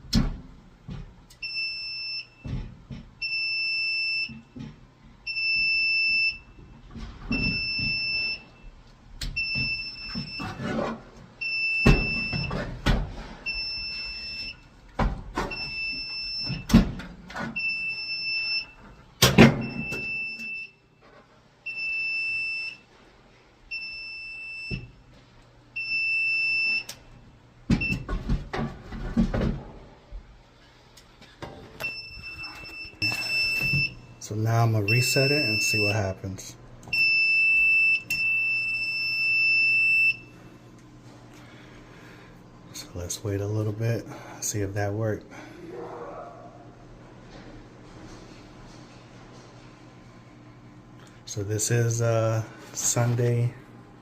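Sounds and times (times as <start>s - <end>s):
alarm panel beeping: 7.3s - 8.7s, 31.8s - 40.4s.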